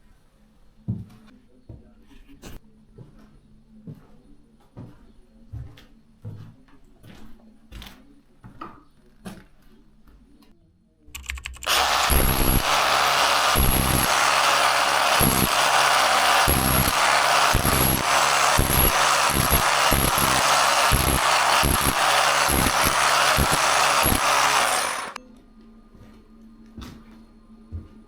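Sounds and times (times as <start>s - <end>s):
power tool running under load: 11.6s - 25.2s.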